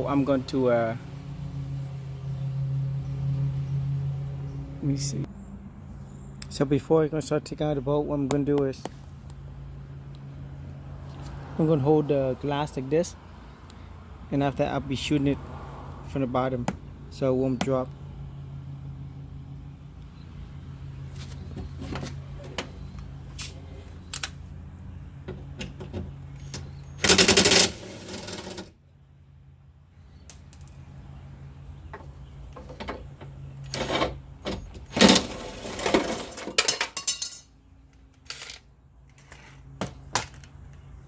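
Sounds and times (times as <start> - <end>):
tools clinking: 36.0 - 39.6.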